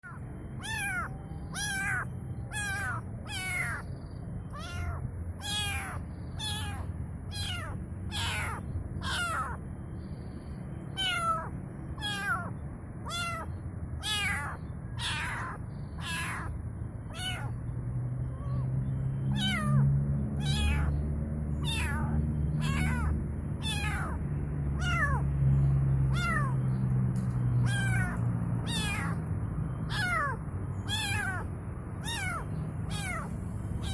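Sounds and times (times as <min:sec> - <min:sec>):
kitten meowing: 0:00.0 - 0:03.9, 0:04.5 - 0:09.6, 0:11.0 - 0:16.5, 0:17.1 - 0:17.6, 0:19.3 - 0:19.8, 0:20.4 - 0:21.0, 0:21.6 - 0:24.2, 0:24.8 - 0:25.2, 0:26.1 - 0:26.6, 0:27.6 - 0:29.2, 0:29.9 - 0:33.9.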